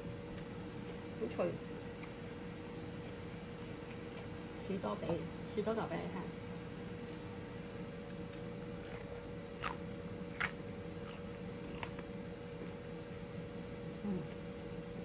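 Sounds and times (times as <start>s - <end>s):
faint steady hum: 0.0s - 15.0s
person chewing crunchy food: 7.4s - 12.1s.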